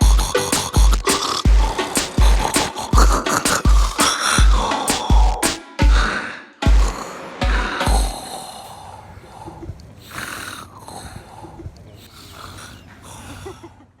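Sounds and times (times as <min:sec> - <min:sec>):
deep bass thumps: 0:00.0 - 0:08.2
man snoring: 0:00.0 - 0:11.4.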